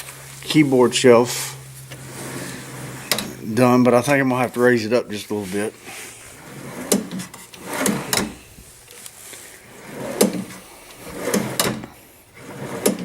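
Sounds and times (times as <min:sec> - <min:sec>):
keyboard shelf sliding: 0:01.1 - 0:03.8, 0:05.3 - 0:08.7, 0:09.5 - 0:13.0.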